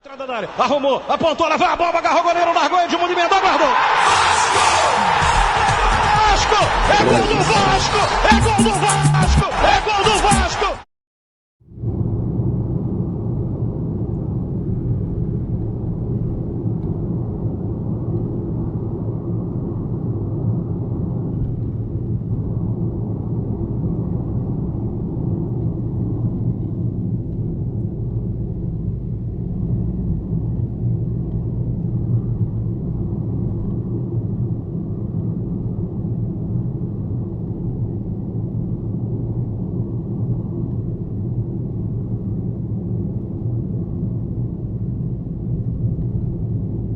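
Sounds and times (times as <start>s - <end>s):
car engine and road rumble: 12.4s - 38.2s.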